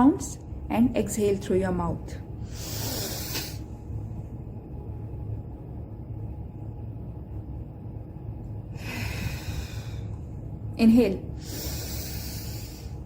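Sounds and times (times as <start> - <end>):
low steady rumble: 0.0 - 13.0
woman breathing in through nose: 2.4 - 3.7, 8.7 - 10.2, 11.4 - 13.0
woman breathing out: 8.7 - 10.2, 11.4 - 13.0.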